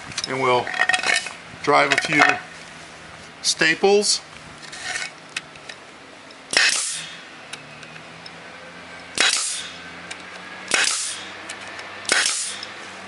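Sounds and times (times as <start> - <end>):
pneumatic stapler shots: 6.5 - 7.2, 9.1 - 12.8
short air hiss: 6.6 - 7.2.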